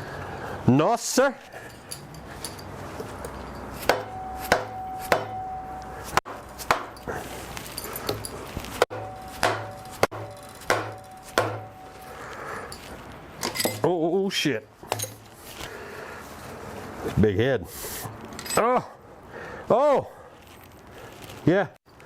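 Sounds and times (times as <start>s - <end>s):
hammer blows on metal: 3.6s - 7.1s, 8.1s - 12.8s.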